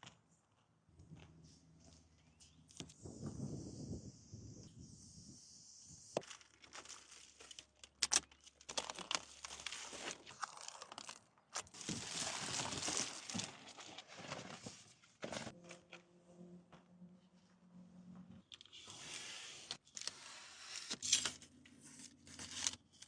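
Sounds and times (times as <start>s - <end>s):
packaging rustling and tearing: 6.2s - 15.6s, 22.0s - 23.0s.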